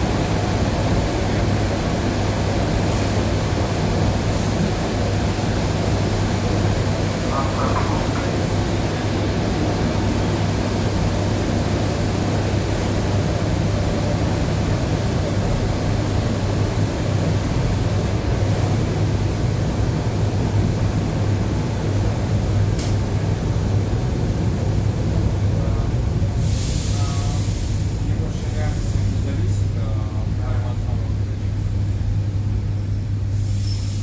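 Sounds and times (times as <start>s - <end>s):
train wheels rumbling on rail: 0.0s - 34.0s
faint click: 22.8s - 23.0s.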